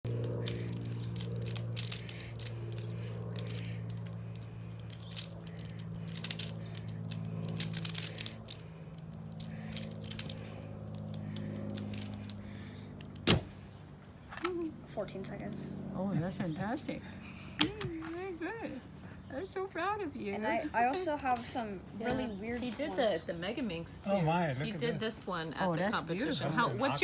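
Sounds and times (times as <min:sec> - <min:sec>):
low steady hum: 0:00.0 - 0:27.0
plastic puzzle cube clicking: 0:00.4 - 0:02.6, 0:04.8 - 0:08.6.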